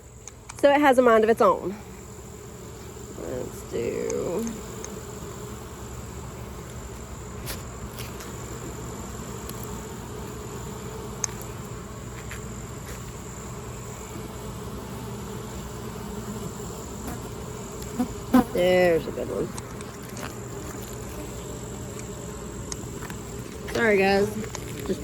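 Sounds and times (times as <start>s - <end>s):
honeybees buzzing: 0.0s - 25.0s
faint clicks: 0.2s - 0.7s, 11.2s - 11.5s.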